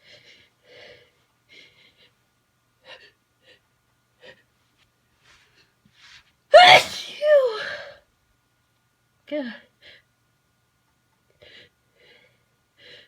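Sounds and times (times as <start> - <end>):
person sneezing loudly: 6.5 - 7.8.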